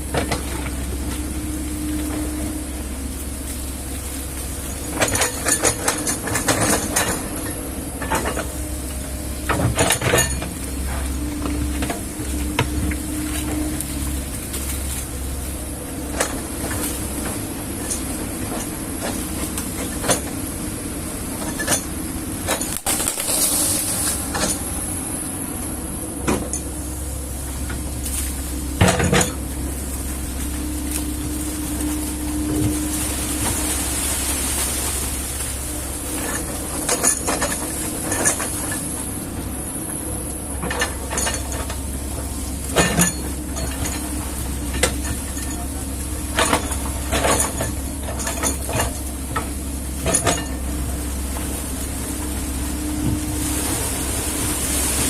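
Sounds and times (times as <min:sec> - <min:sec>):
excavator engine running: 0:00.0 - 0:55.0
metallic clanks and knocks: 0:27.6 - 0:34.1, 0:36.0 - 0:38.9, 0:40.6 - 0:51.5.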